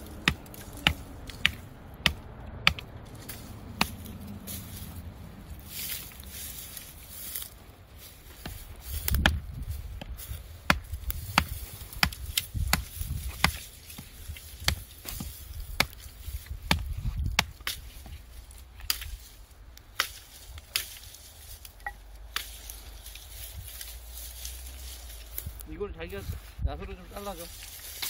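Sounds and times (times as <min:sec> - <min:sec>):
wood being chopped: 0:00.0 - 0:04.2, 0:08.4 - 0:18.2, 0:19.8 - 0:21.1.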